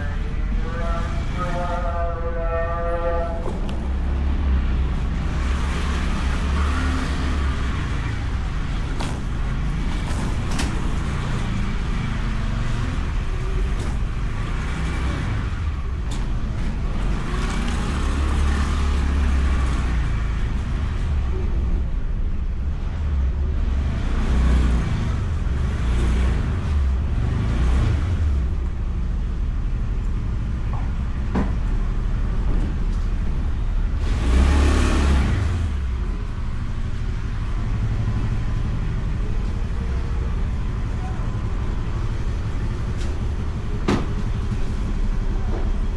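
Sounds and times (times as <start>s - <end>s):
road noise: 0.0s - 45.9s
scooter engine: 3.0s - 21.2s.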